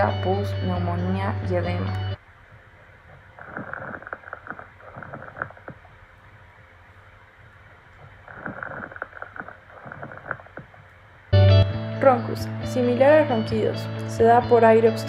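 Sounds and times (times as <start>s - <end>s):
lung crackles through stethoscope: 3.1s - 6.0s, 7.4s - 11.0s.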